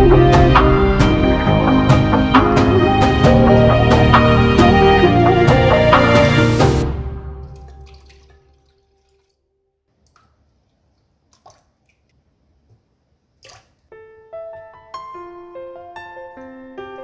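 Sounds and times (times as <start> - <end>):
soft keyboard music: 0.0 - 8.1, 14.0 - 17.0
background music: 0.0 - 8.3.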